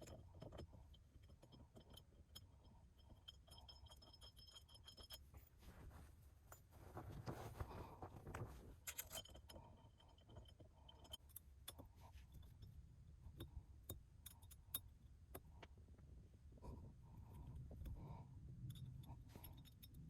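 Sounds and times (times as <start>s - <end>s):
handling of hand tools and bolts: 0.0s - 15.4s.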